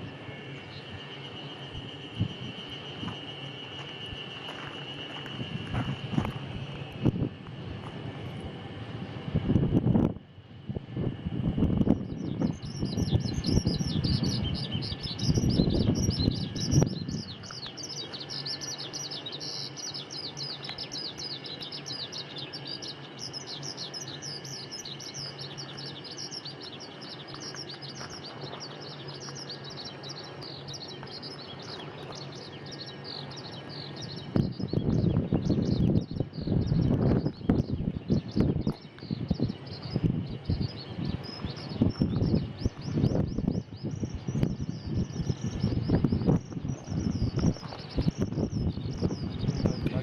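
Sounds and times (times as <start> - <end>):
chorus of birds chirping: 0.0 - 7.4, 10.0 - 50.0
faint steady low hum: 0.0 - 50.0
loud low rumbling: 5.4 - 19.7.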